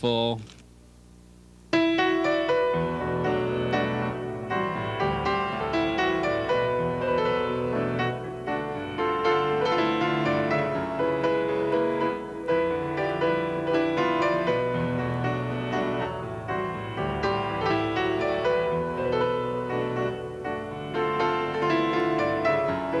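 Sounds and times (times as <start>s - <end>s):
piano music: 1.7s - 23.0s.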